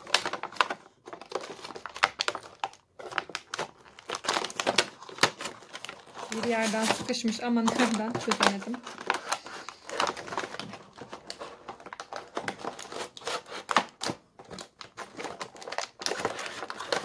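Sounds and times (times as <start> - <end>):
packaging crinkling and rustling: 0.0 - 17.0.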